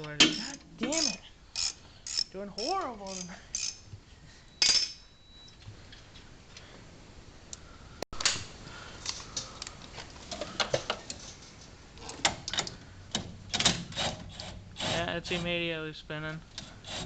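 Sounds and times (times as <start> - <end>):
hand tools clinking on metal: 4.6 - 5.1.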